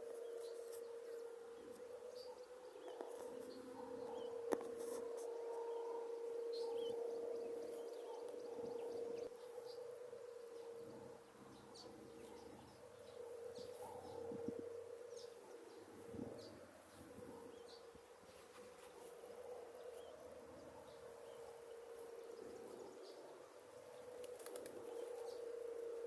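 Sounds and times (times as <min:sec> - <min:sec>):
steady low hum: 0:00.0 - 0:18.3.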